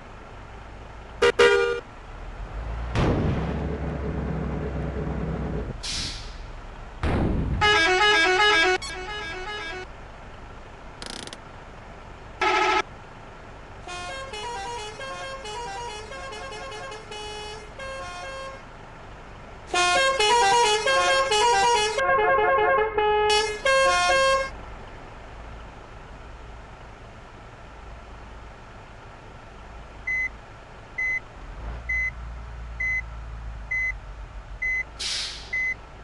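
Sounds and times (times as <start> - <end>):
musical bus horn tunes: 1.2 - 1.8, 7.6 - 9.9, 12.4 - 12.9, 13.8 - 18.7, 19.7 - 24.6.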